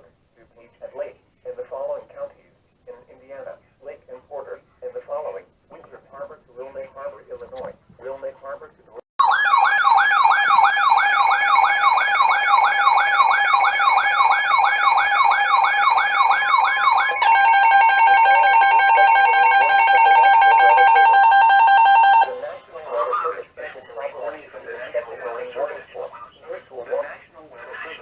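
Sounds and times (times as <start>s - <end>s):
sweeping electronic siren: 9.2s - 24.1s
harsh two-tone alarm: 9.2s - 24.4s.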